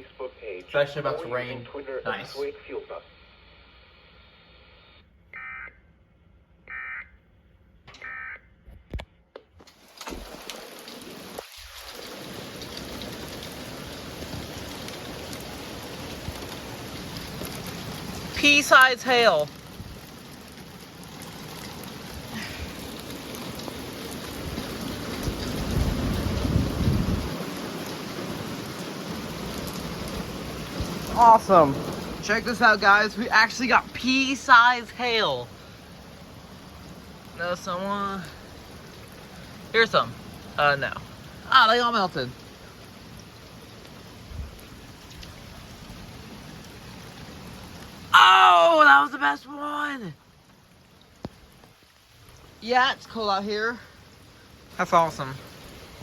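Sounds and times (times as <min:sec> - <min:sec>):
steady hiss of rain: 0:00.0 - 0:04.8, 0:09.6 - 0:56.0
low rumble of thunder: 0:22.2 - 0:32.8.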